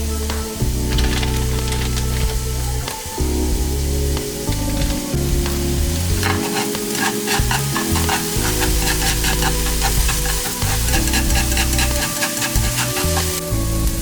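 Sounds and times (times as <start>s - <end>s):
food sizzling in oil: 1.4s - 14.0s
quick stirring strokes: 6.1s - 13.5s.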